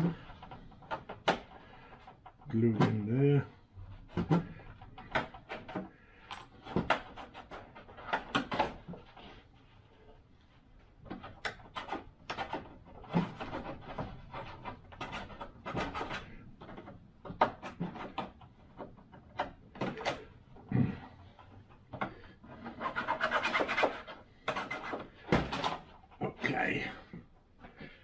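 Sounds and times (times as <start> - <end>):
plastic parts clicking and tapping: 0.0 - 3.1, 4.1 - 9.2, 11.0 - 20.7.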